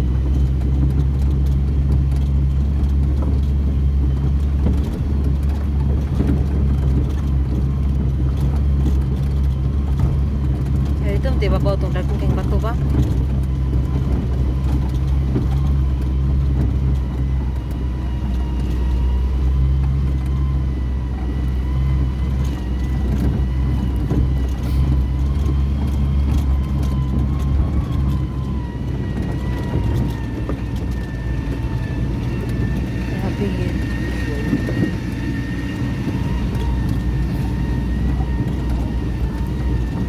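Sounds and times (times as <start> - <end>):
large engine running: 0.0 - 40.0.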